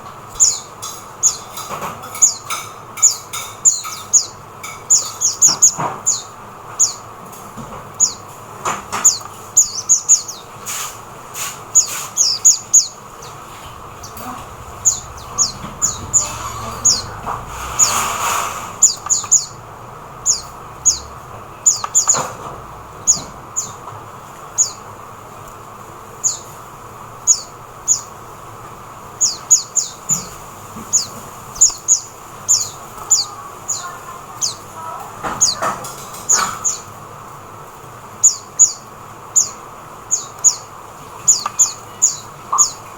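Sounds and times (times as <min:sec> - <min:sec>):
bird chirping: 0:00.0 - 0:07.2, 0:07.9 - 0:25.0, 0:26.1 - 0:28.3, 0:29.1 - 0:37.0, 0:38.1 - 0:42.9
rush of noise: 0:13.2 - 0:19.9.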